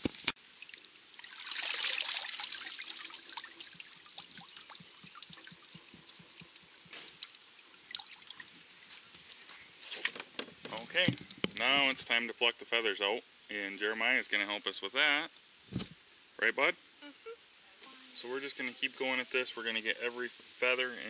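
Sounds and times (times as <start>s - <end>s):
water dripping and splashing: 0.0s - 9.8s
water from hose pouring into container: 0.6s - 8.8s.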